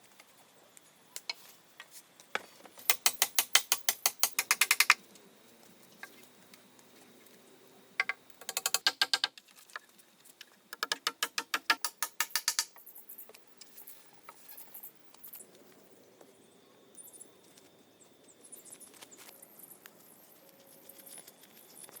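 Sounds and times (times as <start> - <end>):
ratchet-like clicking: 2.9 - 5.0, 8.0 - 9.4, 10.8 - 12.8.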